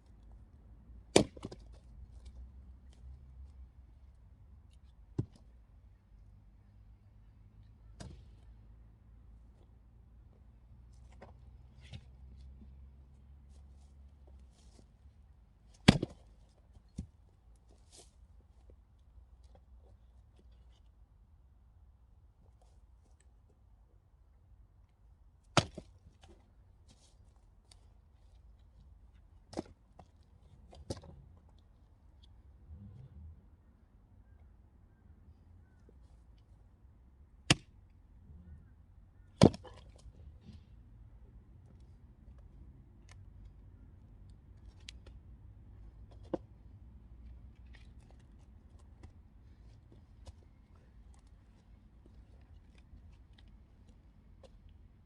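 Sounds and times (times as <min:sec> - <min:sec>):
axe chopping wood: 0:01.1 - 0:01.7, 0:15.7 - 0:17.1, 0:25.5 - 0:26.4, 0:37.5 - 0:37.7, 0:39.4 - 0:40.0.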